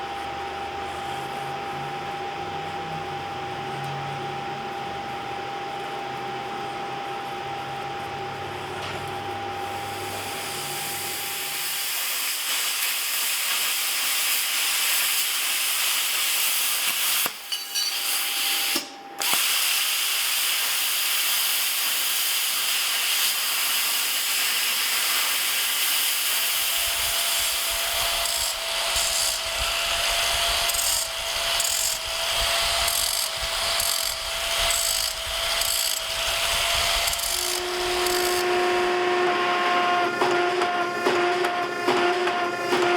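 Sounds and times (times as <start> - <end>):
power tool whining hiss: 9.6 - 41.4
low pulsing rumble: 26.6 - 39.0.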